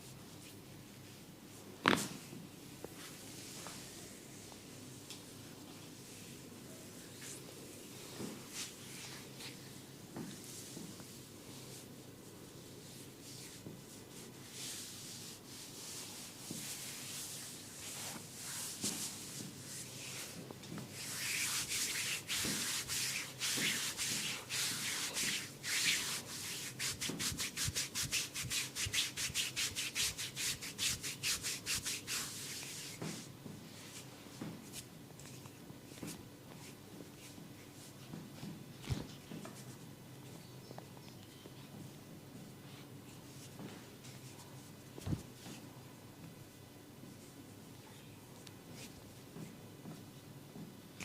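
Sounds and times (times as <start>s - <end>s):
hands rubbing skin and hair: 1.8s - 12.0s, 12.8s - 39.8s.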